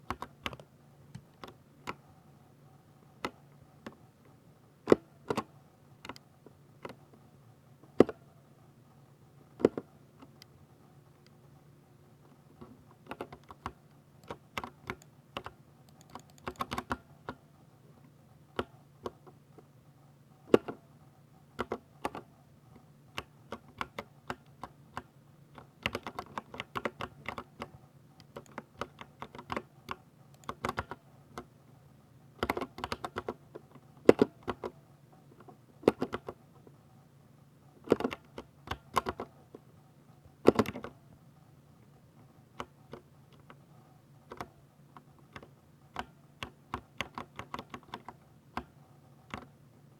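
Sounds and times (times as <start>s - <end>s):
mechanical keyboard typing: 13.0s - 17.4s, 21.6s - 22.3s, 23.1s - 31.5s, 32.4s - 33.4s, 34.1s - 34.7s, 35.8s - 36.4s, 37.8s - 39.3s, 40.4s - 41.0s, 45.2s - 49.5s.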